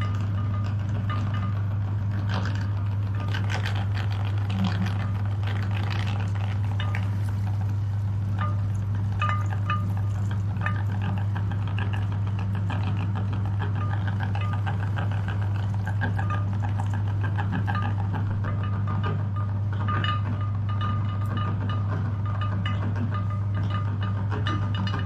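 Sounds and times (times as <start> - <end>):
meat grinder motor humming: 0.0 - 19.9
small clicks and crackles: 0.0 - 25.0.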